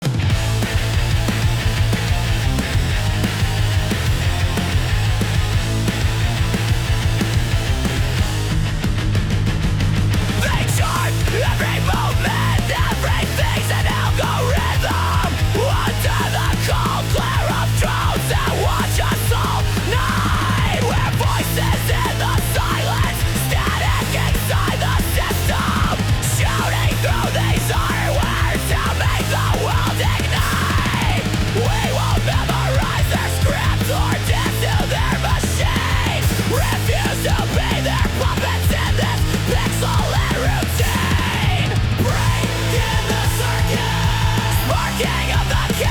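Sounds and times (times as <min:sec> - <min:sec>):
dark electronic industrial music: 0:00.2 - 0:45.9.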